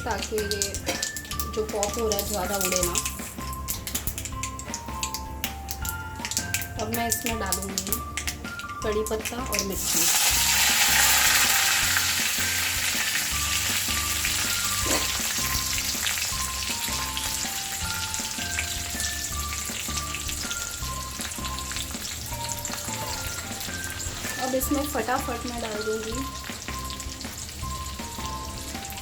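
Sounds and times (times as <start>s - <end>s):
background music: 0.0s - 29.0s
leaves sizzling in hot oil: 0.0s - 29.0s.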